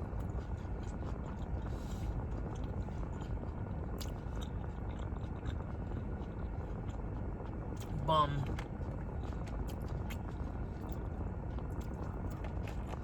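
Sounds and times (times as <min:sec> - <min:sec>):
steady low rumble: 0:00.0 - 0:13.0
person chewing crunchy chips: 0:00.2 - 0:08.6.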